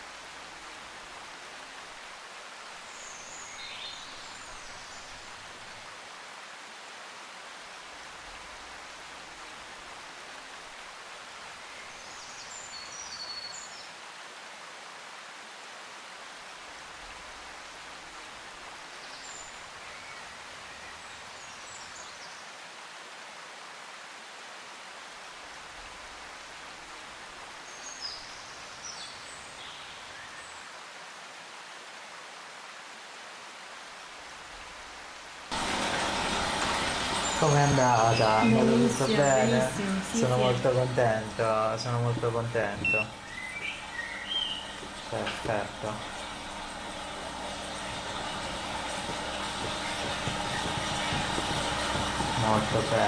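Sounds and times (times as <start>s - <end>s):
steady hiss: 35.5s - 53.0s
faint high chirps: 35.6s - 53.0s.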